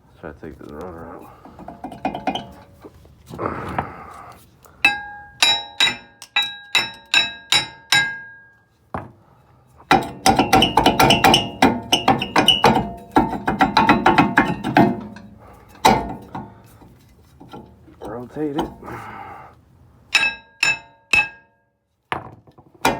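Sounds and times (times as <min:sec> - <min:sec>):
hammer striking steel disc: 0:04.8 - 0:08.5, 0:09.9 - 0:16.5, 0:20.1 - 0:21.5.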